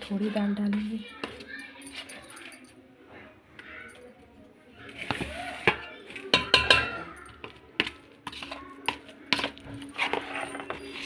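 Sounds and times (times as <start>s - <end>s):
spoon scraping mixing bowl: 0.0s - 2.2s, 4.8s - 11.0s.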